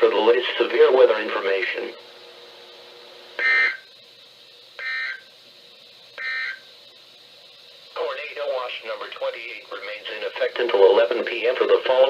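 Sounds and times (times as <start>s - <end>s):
warbling digital data tones: 3.4s - 3.9s, 4.8s - 5.2s, 6.2s - 6.7s.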